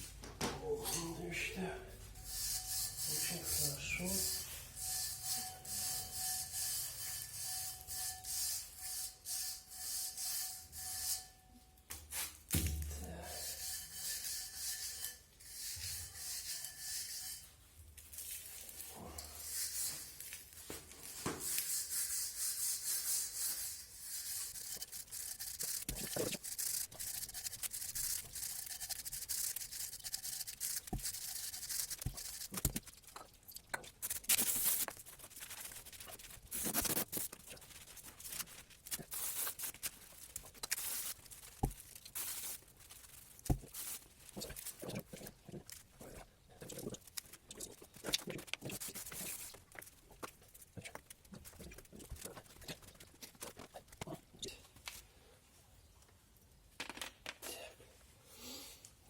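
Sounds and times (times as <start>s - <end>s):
scrubbing brake parts: 21.0s - 54.0s.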